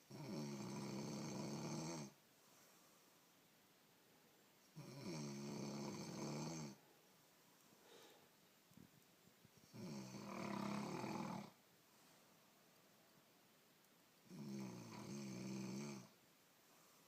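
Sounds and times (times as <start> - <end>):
person snoring: 0.1 - 2.2, 4.8 - 6.8, 9.6 - 11.6, 14.2 - 16.2.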